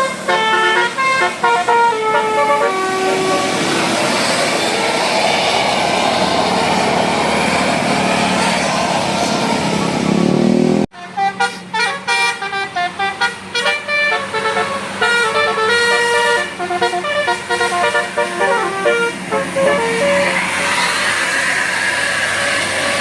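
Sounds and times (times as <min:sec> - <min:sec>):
musical bus horn playing tune: 0:00.0 - 0:04.0, 0:07.8 - 0:09.1, 0:10.8 - 0:20.8.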